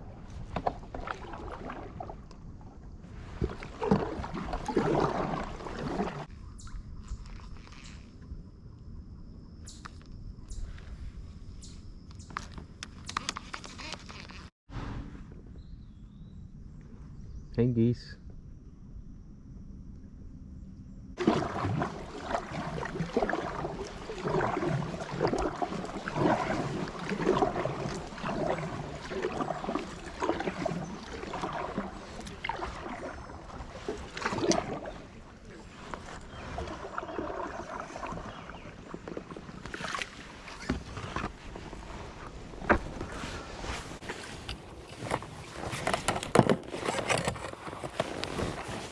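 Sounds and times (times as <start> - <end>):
paddle splashes and knocks: 0.0 - 6.3, 21.2 - 48.9.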